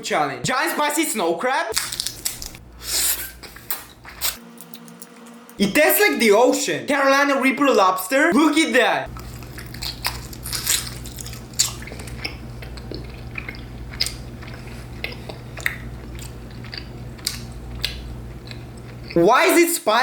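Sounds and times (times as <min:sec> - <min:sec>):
seafood shells cracking: 0:01.7 - 0:02.6, 0:09.1 - 0:14.3
wet chewing: 0:01.7 - 0:05.2, 0:09.1 - 0:19.2
steady low hum: 0:01.8 - 0:06.4, 0:08.4 - 0:19.3.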